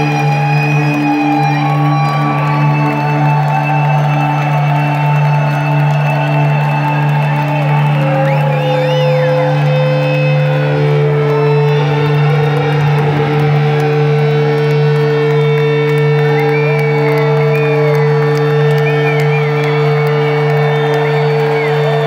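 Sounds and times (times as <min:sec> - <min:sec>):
steady low drone: 0:00.0 - 0:22.0
sustained electric guitar notes: 0:00.0 - 0:22.0.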